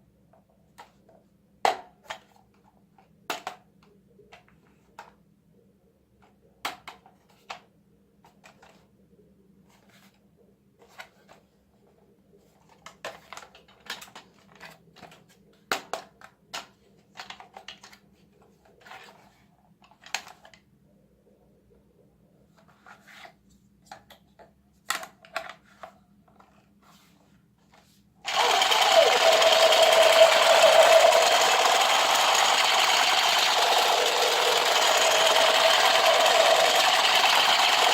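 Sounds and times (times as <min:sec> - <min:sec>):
plastic toy parts clicking: 0:28.3 - 0:37.9
toy rifle electronic firing: 0:28.3 - 0:37.9
vibration motors buzzing: 0:28.3 - 0:37.9.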